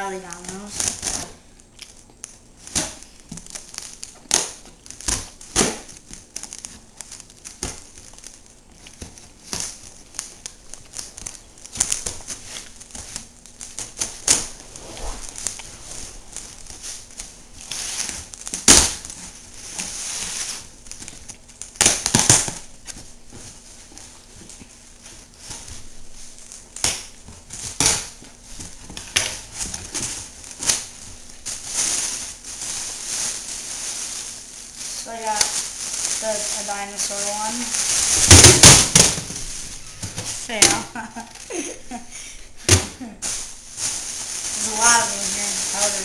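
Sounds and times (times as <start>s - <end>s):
packaging crinkling: 0.2s - 46.0s.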